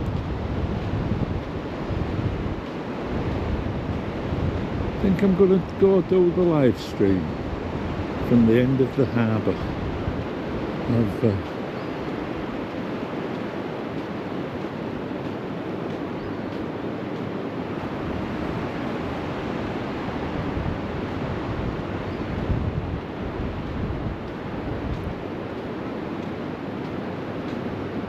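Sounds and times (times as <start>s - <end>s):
surf washing onto beach: 0.0s - 28.0s
wind buffeting microphone: 0.0s - 28.0s.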